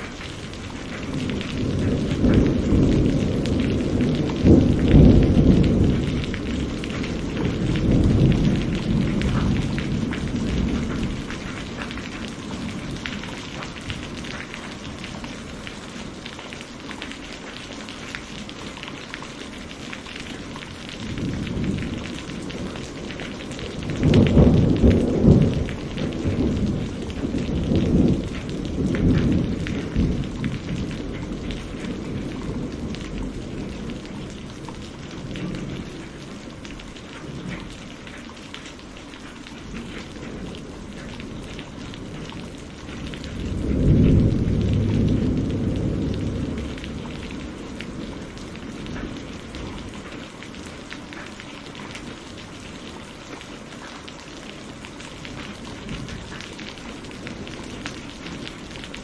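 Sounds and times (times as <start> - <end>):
thunder rolling: 0.0 - 16.3, 20.3 - 38.0, 39.6 - 50.3
heavy rain: 0.0 - 59.0.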